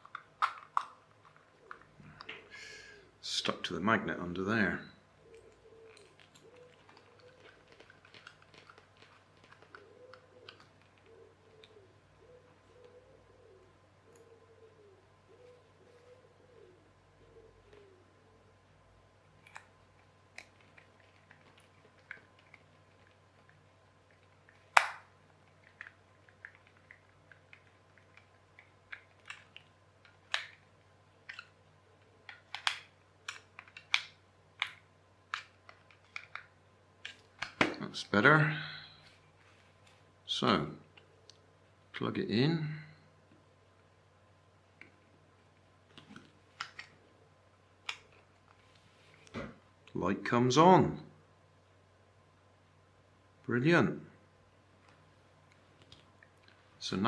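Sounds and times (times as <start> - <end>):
faint wavering hoot: 5.2 - 7.6, 9.8 - 18.5
small plastic parts clicking: 5.4 - 11.8, 32.2 - 37.7.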